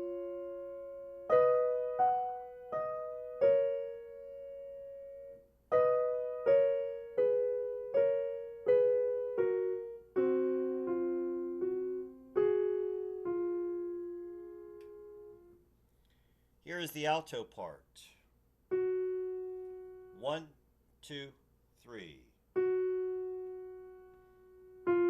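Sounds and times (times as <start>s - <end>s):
piano melody in harmony: 0.0s - 15.6s, 18.7s - 20.4s, 22.5s - 25.0s.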